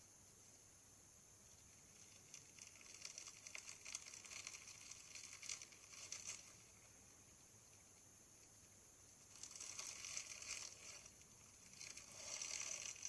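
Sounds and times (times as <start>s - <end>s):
crunchy slime crackling and popping: 1.9s - 6.9s, 9.2s - 13.0s.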